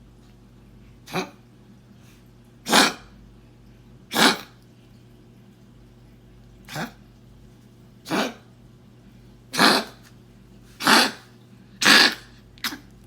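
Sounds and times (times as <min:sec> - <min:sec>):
small dog coughing: 0:02.6 - 0:03.1, 0:04.1 - 0:04.6, 0:08.1 - 0:08.5, 0:09.5 - 0:10.1, 0:10.8 - 0:12.9.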